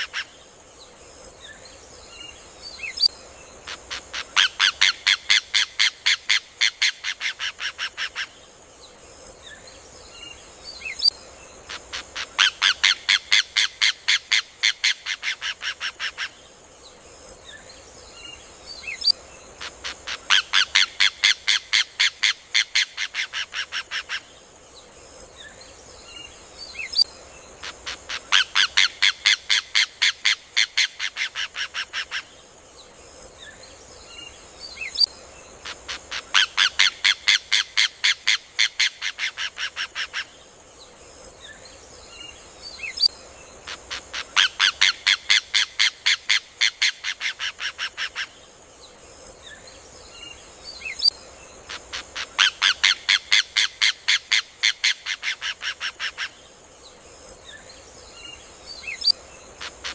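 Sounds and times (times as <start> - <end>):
faint high hiss: 0.0 - 59.9.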